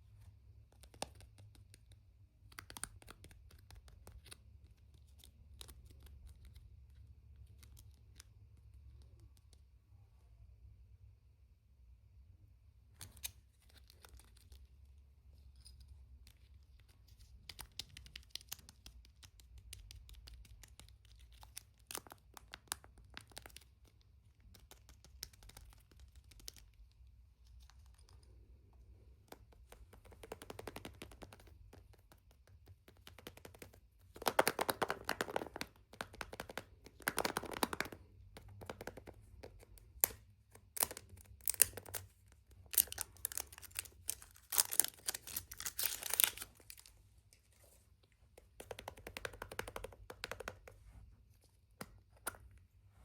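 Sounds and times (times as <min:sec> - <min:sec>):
small clicks and taps: 0:00.6 - 0:09.7, 0:15.6 - 0:46.9, 0:48.1 - 0:51.0
packaging crinkling and tearing: 0:40.7 - 0:47.0.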